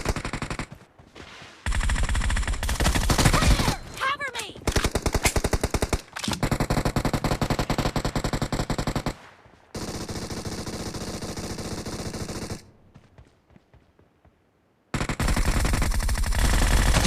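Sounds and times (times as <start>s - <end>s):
video game automatic gunfire: 1.6s - 3.7s, 4.7s - 12.7s, 14.9s - 17.0s.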